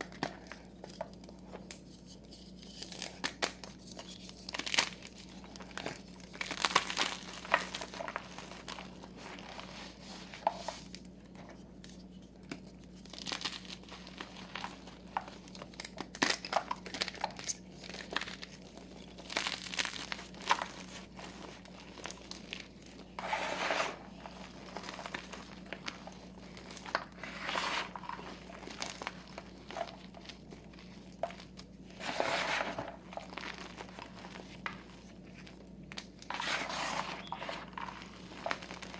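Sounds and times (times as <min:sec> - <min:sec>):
chalk crushed in hands: 0:36.3 - 0:38.9.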